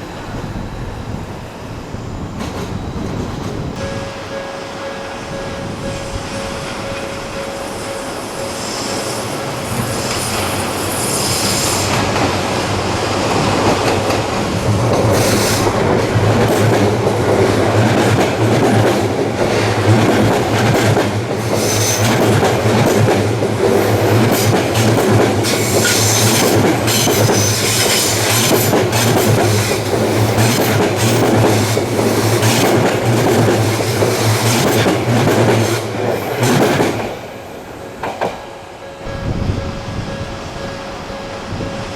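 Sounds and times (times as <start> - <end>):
train wheels clacking over rail joints: 2.4 - 37.2
high wheel squeal: 3.8 - 12.1.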